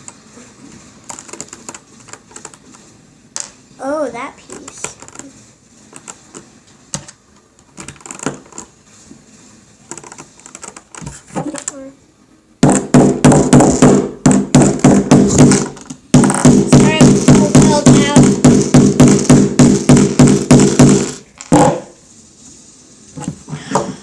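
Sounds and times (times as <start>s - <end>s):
rapid loud knocking on cube: 12.6s - 21.9s.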